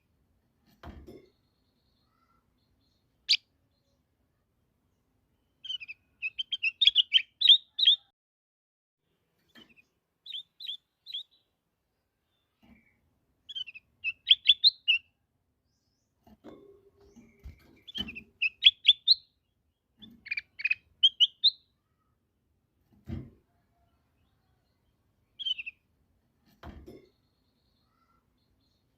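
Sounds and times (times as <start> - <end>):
bulbul singing whistled notes: 5.6 - 8.1, 10.3 - 11.4, 13.5 - 15.1, 17.9 - 19.3, 20.3 - 21.6.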